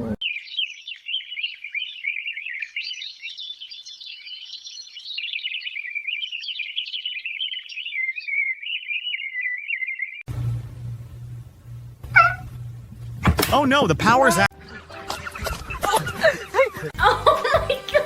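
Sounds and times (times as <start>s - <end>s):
small birds chirping and twittering: 0.0s - 10.3s, 14.5s - 17.0s.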